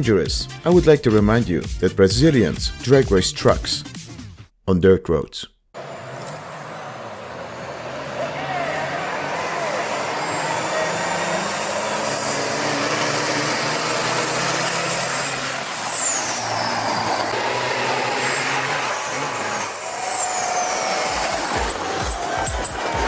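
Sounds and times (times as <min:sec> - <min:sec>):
heavy trucks engine drone: 0:05.8 - 0:23.0
high whistling sweeps: 0:05.9 - 0:23.0.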